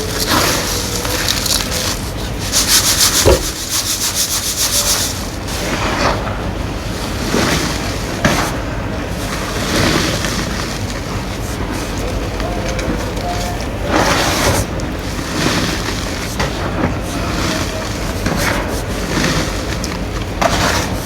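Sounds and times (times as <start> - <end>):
chalk scraping by hand: 0.5 - 5.4.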